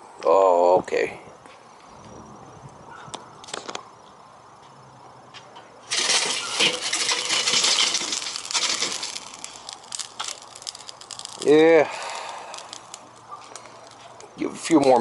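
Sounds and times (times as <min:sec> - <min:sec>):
charcoal grill clinking and crackling: 0:05.8 - 0:15.0.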